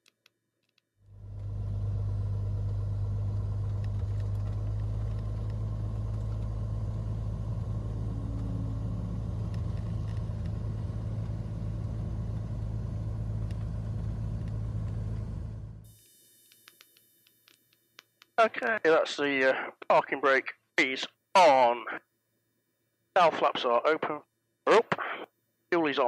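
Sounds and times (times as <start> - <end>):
airplane engine hum in cockpit: 1.0 - 15.9.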